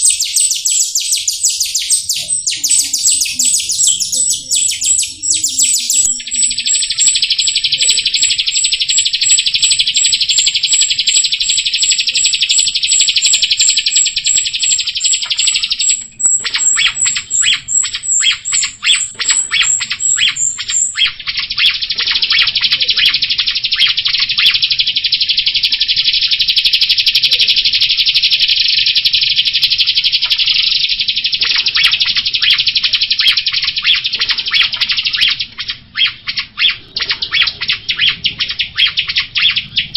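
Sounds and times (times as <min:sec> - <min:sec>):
starling rattling trill: 0:00.0 - 0:21.2
high bird chirps: 0:00.0 - 0:39.9.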